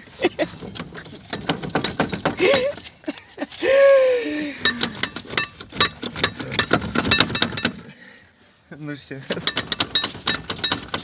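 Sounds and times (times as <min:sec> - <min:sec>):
metallic knocks and clinks: 0:00.5 - 0:02.7, 0:04.6 - 0:07.9, 0:09.3 - 0:11.0.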